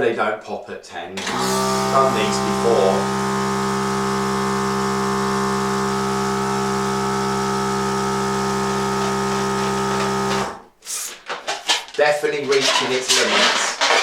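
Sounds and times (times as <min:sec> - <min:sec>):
electric balloon pump humming: 0:01.2 - 0:10.8.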